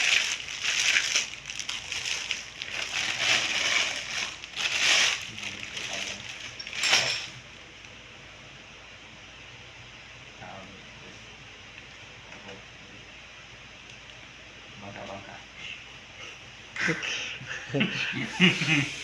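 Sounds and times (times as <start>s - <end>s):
plastic rustling and crinkling: 0.0s - 7.4s.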